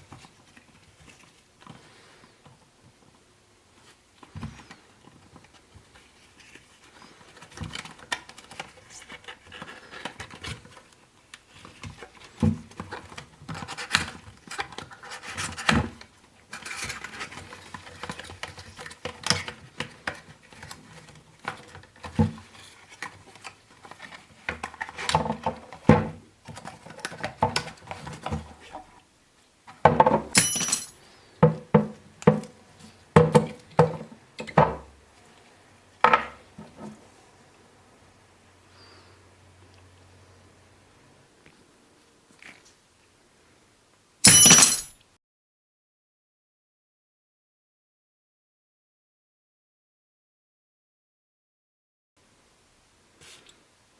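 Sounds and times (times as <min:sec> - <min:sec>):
box taps and knocks: 0:31.4 - 0:32.6, 0:33.2 - 0:34.9.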